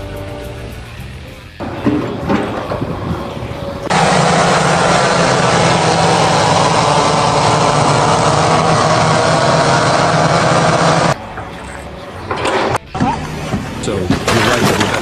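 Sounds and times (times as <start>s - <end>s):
loud engine running: 1.6s - 12.8s
mixed noise: 1.6s - 12.8s.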